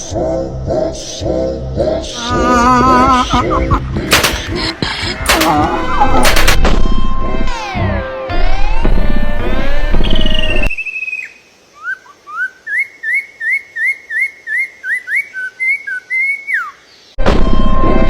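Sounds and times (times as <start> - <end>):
bird whistling: 10.1 - 16.8.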